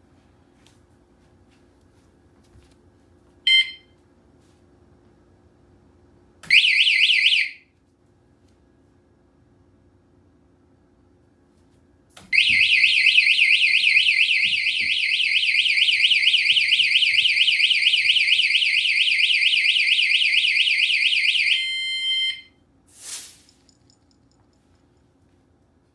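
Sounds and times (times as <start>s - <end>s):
warbling electronic alarm siren: 6.5s - 7.6s, 12.3s - 22.5s.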